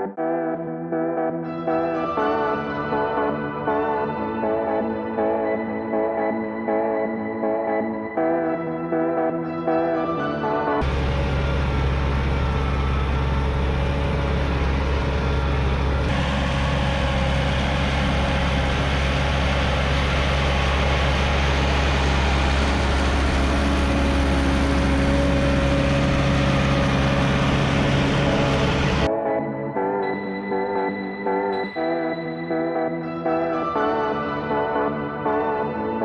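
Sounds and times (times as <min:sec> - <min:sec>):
bulldozer diesel engine droning: 0:10.8 - 0:29.1.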